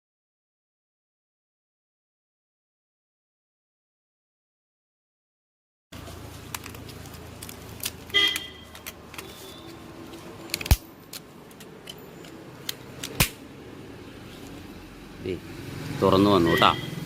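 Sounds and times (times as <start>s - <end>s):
plastic clips cracking: 6.4s - 13.4s.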